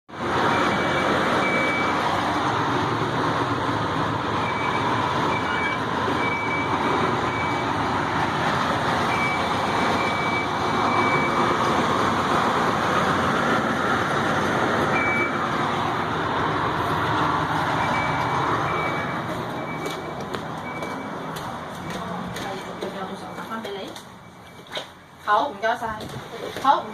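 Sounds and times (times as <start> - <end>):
heavy vehicle noise: 0.1 - 26.9
high electronic beeping: 9.1 - 11.4, 14.9 - 15.4, 17.8 - 21.2.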